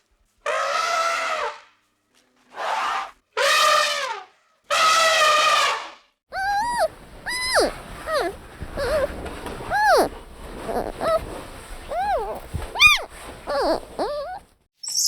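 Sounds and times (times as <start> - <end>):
animal brassy call: 6.4 - 14.4.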